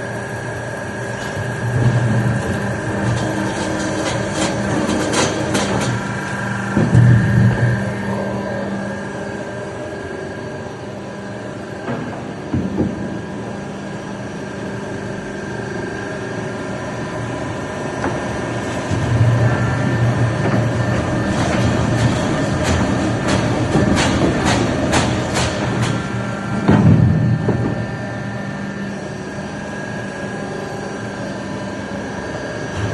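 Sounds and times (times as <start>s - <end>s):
heavy low hum: 32.6s - 32.9s.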